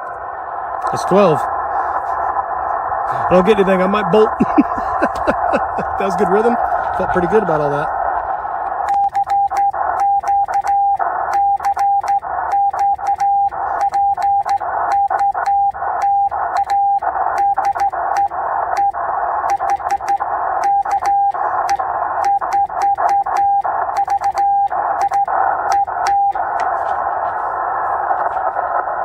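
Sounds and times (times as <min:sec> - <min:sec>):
radio receiver hiss: 0:00.0 - 0:29.0
morse code tone keyed on and off: 0:08.8 - 0:26.5.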